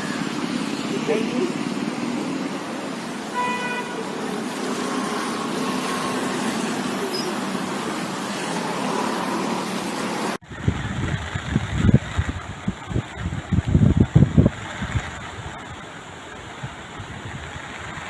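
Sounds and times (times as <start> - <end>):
road traffic: 0.0 - 13.3
car horn toot: 3.1 - 7.4
wind buffeting microphone: 10.4 - 18.0.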